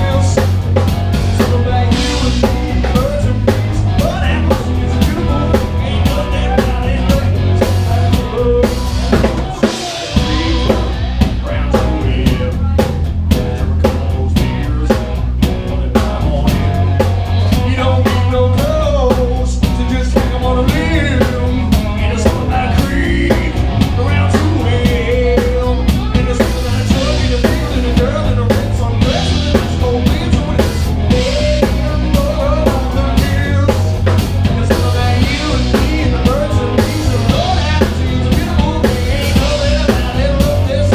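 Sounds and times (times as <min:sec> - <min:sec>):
drum kit beat: 0:00.0 - 0:40.9
live rock band playing: 0:00.0 - 0:40.9.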